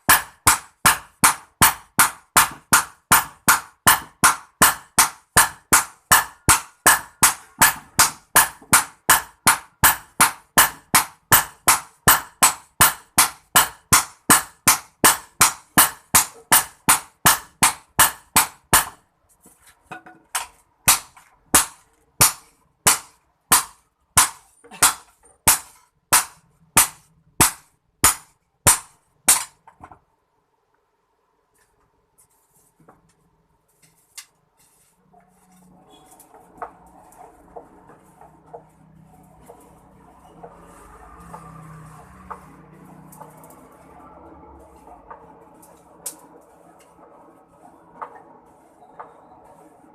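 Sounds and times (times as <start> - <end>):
hammer striking metal on anvil: 0.0 - 19.0, 19.9 - 29.6.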